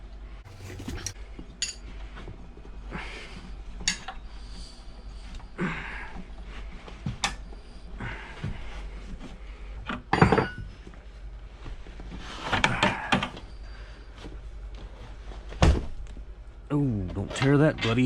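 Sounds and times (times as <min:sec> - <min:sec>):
tire irons knocking and scraping: 0:00.5 - 0:01.2.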